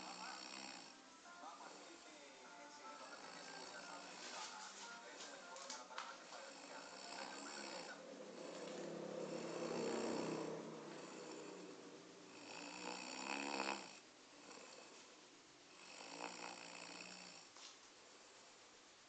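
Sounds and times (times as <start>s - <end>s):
person snoring: 0.0s - 4.4s, 6.4s - 15.1s, 15.7s - 17.5s.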